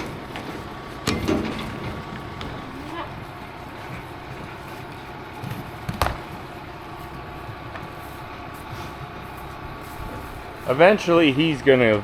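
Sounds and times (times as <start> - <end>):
steady low hum: 0.0 - 12.0
soft thuds: 4.9 - 6.5.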